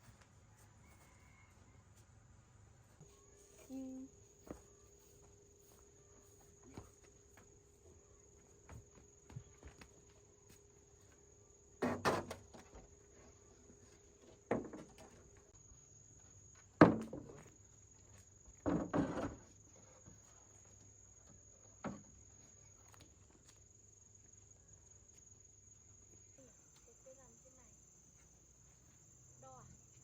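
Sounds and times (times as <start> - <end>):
sharp knocks and thumps: 16.8 - 17.5, 18.6 - 19.5
high insect drone: 17.4 - 30.0.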